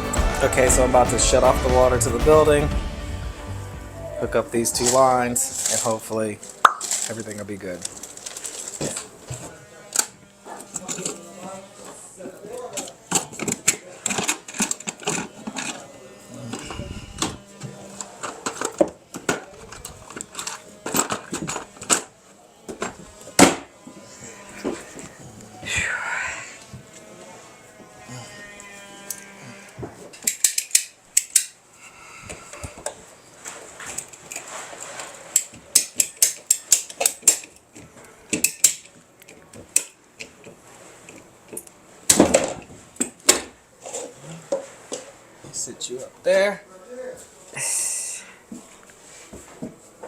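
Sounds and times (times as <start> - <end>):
clicks and knocks of tools: 30.1 - 31.6, 33.9 - 41.8
metallic clicks of hand tools: 30.2 - 31.6.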